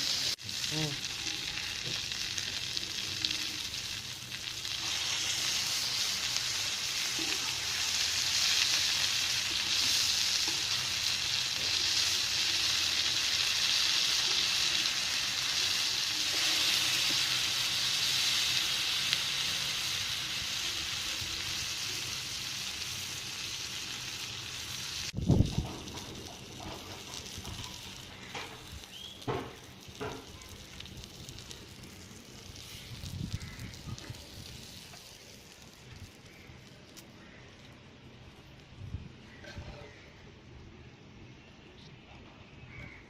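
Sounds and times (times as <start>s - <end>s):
fish frying in hot oil: 0.0s - 37.4s.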